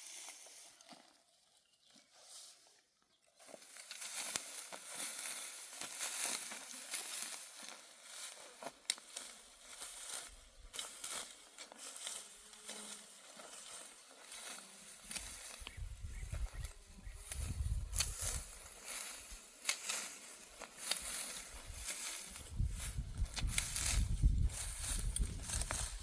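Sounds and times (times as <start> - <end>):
dry stalks rustling and crackling: 0.0 - 26.0
stalks snapping: 17.2 - 22.3.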